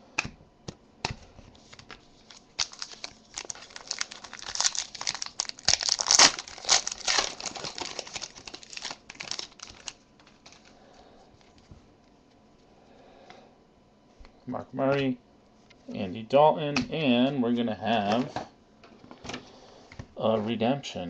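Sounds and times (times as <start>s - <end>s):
foil wrapper crinkling and tearing: 1.7s - 10.8s.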